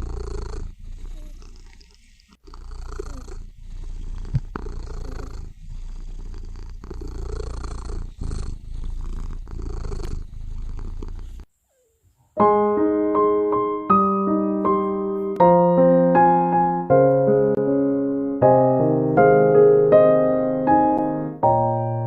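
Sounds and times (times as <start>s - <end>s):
cat purring: 0.0s - 12.4s
piano music: 12.4s - 22.0s.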